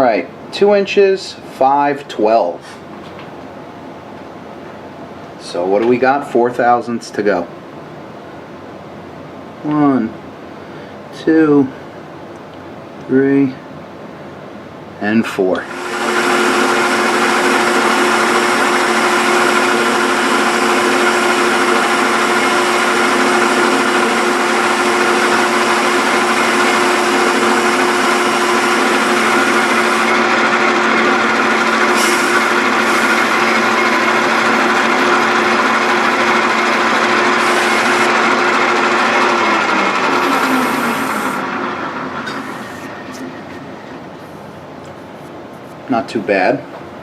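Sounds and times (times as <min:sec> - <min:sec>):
motor coasting down: 0:15.6 - 0:44.1
metal lathe running: 0:15.6 - 0:44.3
cutting hiss: 0:31.9 - 0:33.4, 0:40.1 - 0:41.4.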